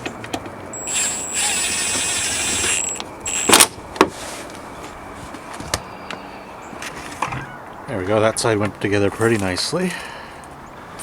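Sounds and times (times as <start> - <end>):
small motor whirring: 0.8 - 3.7.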